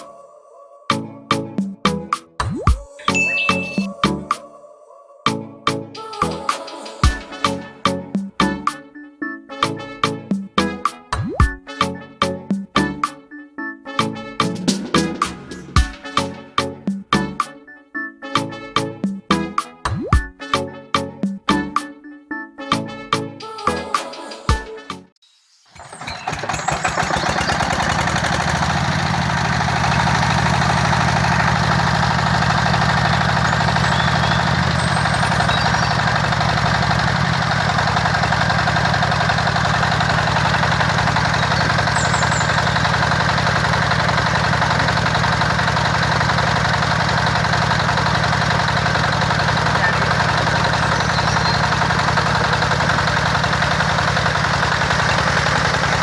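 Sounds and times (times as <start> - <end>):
water pump engine humming: 25.8 - 56.0.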